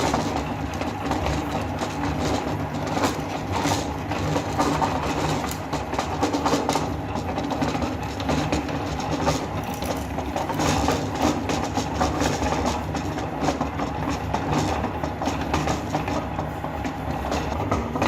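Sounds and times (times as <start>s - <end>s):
meat grinder motor hum: 0.0s - 18.0s
hard candy cracking and crunching: 9.5s - 10.8s.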